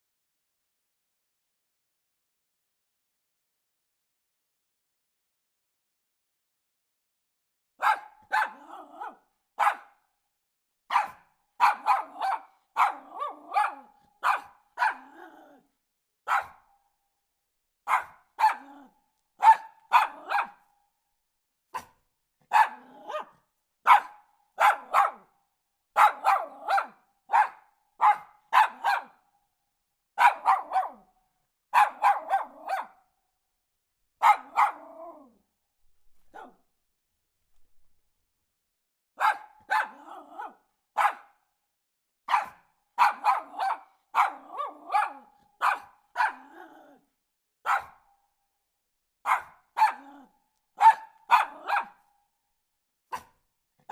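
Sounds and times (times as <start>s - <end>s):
dog barking: 7.8s - 10.2s, 10.9s - 16.9s, 17.8s - 20.7s, 21.7s - 29.3s, 30.2s - 31.1s, 31.7s - 33.2s, 34.2s - 35.4s, 36.2s - 36.7s, 39.2s - 41.6s, 42.2s - 47.0s, 47.6s - 48.2s, 49.2s - 52.1s, 53.0s - 53.9s.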